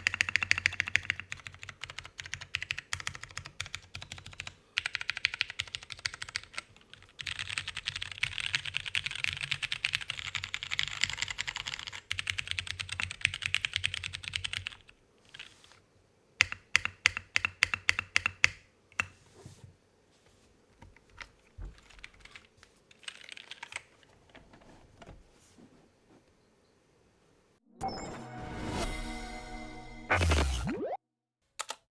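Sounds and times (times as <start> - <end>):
mechanical keyboard typing: 0.0 - 15.8, 16.4 - 19.2, 21.0 - 24.4.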